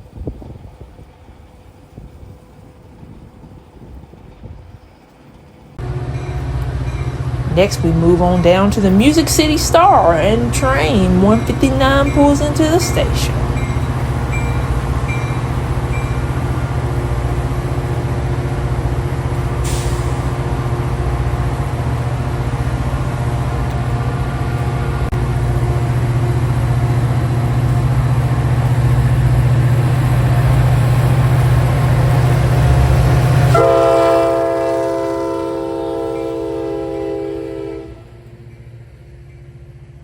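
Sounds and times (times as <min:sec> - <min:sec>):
diesel locomotive droning: 0:00.0 - 0:40.0
locomotive air horn chord: 0:05.8 - 0:13.8, 0:33.5 - 0:38.3.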